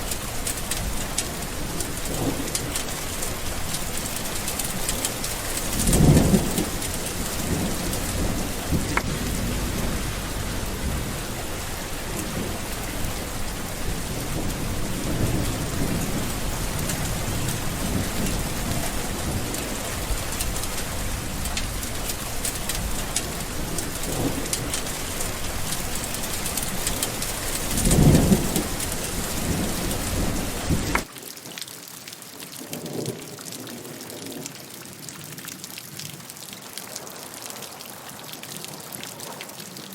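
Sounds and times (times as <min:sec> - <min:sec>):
thunder rumbling: 0:00.0 - 0:31.1
heavy rain: 0:00.0 - 0:39.9.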